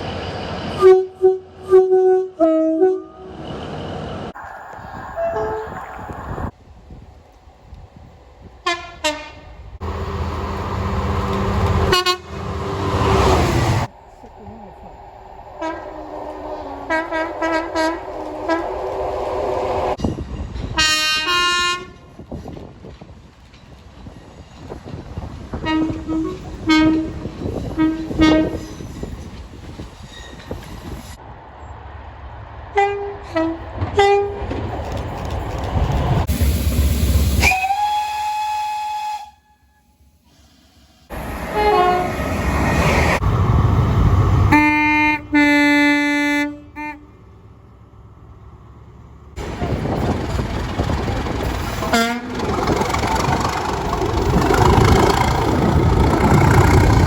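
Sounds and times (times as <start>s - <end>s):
rumble of passing trains: 0.0s - 57.0s
train horns: 0.8s - 3.4s, 8.6s - 13.9s, 15.6s - 19.7s, 20.8s - 22.0s, 25.5s - 28.7s, 32.8s - 34.5s, 37.4s - 40.0s, 41.1s - 43.1s, 44.4s - 47.3s, 51.8s - 52.7s.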